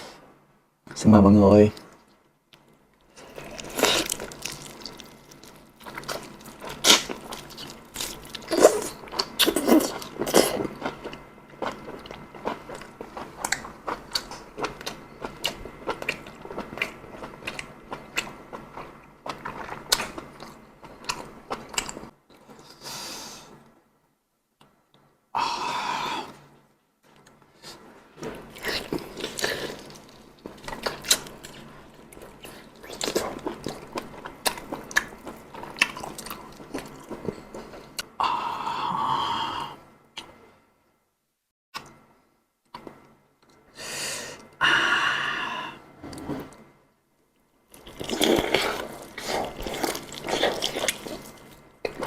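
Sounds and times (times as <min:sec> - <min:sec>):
chewing with crunching: 0:02.5 - 0:22.6, 0:28.2 - 0:38.1, 0:47.7 - 0:52.0.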